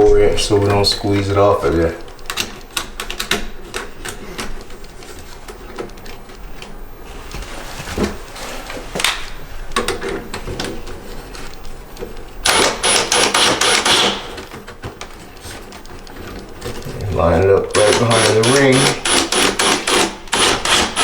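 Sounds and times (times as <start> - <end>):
nut driver rapid clicking: 12.4 - 21.0.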